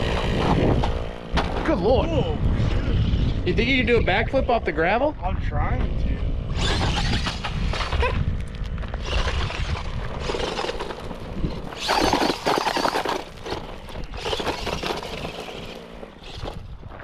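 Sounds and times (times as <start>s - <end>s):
gravel crunching under tyres: 5.8s - 17.0s
toy car motor whining: 6.5s - 8.2s, 8.9s - 16.7s.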